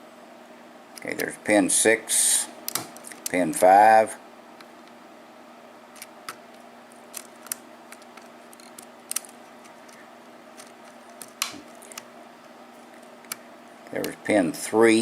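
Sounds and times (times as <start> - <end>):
faint steady hum: 0.0 - 15.0
lock pick clicking against pins: 7.1 - 10.0.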